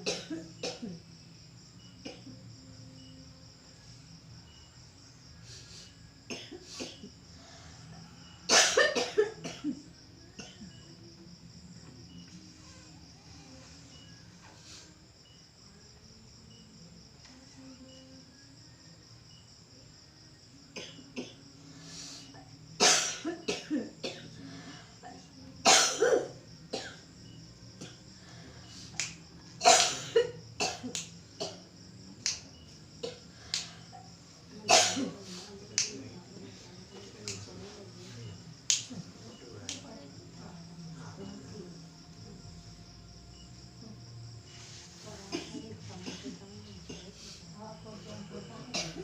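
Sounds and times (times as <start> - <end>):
person coughing harshly: 0.0 - 0.9, 8.5 - 9.7, 22.8 - 24.3, 25.6 - 27.0, 29.6 - 30.8, 31.4 - 31.6, 34.7 - 35.2
crickets chirping: 0.0 - 49.0.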